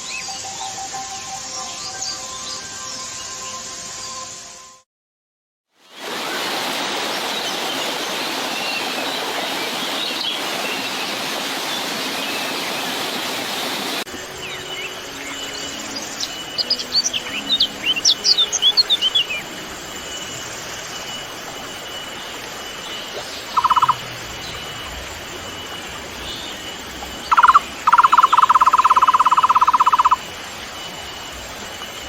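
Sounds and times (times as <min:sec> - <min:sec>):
birds chirping and whistling: 0:14.4 - 0:19.6
bird trill: 0:23.5 - 0:24.8, 0:25.5 - 0:32.0.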